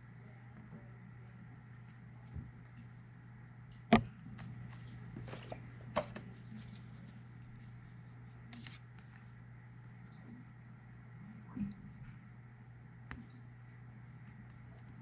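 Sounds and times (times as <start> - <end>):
steady low hum: 0.0 - 15.0
cards and packaging rustling: 8.5 - 9.2.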